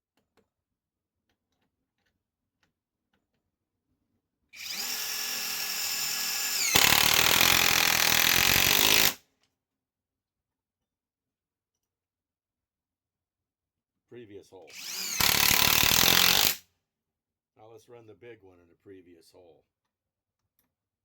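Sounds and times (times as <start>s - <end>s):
impact wrench hammering: 4.6s - 9.2s, 14.7s - 16.6s
impact wrench motor whine: 4.6s - 9.2s, 14.7s - 16.6s.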